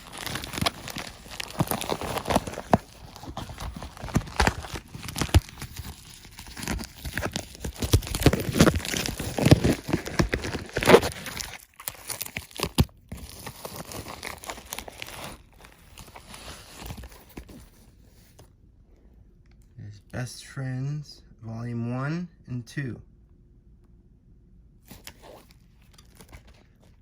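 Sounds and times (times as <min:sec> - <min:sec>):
packaging tearing and crinkling: 0:00.0 - 0:17.9, 0:24.9 - 0:27.0.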